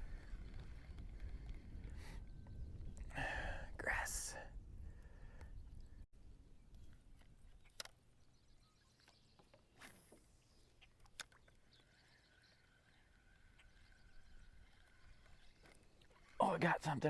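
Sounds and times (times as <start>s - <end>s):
distant birds chirping: 5.5s - 16.8s.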